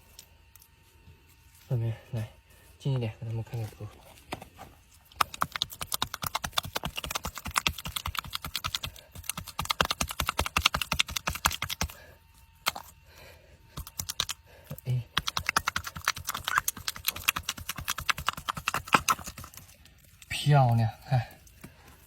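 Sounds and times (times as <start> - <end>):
hands working in wet mud: 5.0 - 12.9, 13.8 - 22.0.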